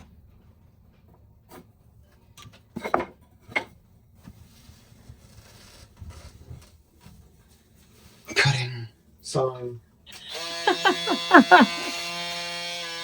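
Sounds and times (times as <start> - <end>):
objects knocking and clattering: 2.4 - 3.8.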